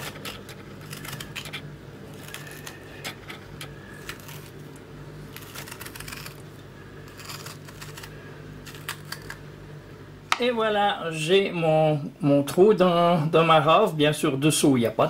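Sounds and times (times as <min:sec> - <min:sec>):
hand tool scraping turnip flesh: 0:05.3 - 0:06.4.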